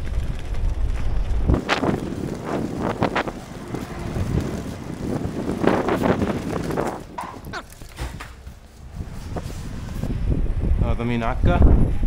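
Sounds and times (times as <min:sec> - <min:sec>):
wind buffeting microphone: 0:00.0 - 0:12.0
sharp knocks and clatter: 0:02.8 - 0:08.8.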